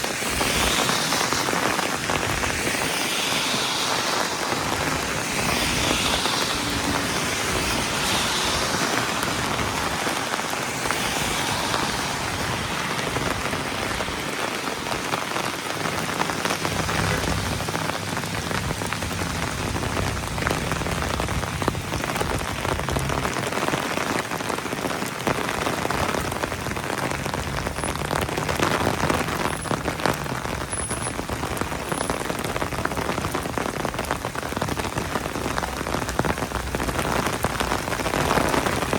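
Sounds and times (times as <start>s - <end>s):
heavy rain on hard surfaces: 0.0s - 38.9s.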